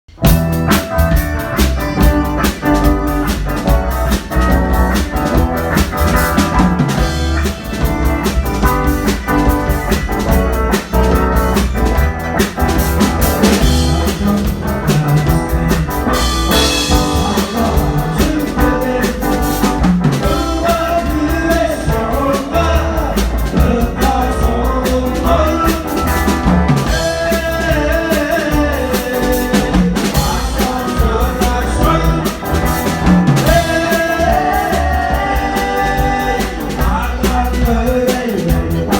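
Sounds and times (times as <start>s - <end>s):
band playing live: 0.1s - 38.9s
drum kit beat: 0.1s - 38.9s
person singing: 13.4s - 38.9s.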